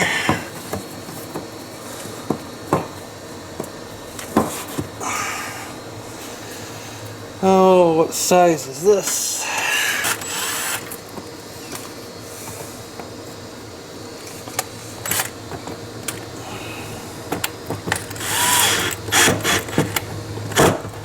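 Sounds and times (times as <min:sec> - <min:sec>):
hand tools clicking and clinking: 0:17.3 - 0:21.0.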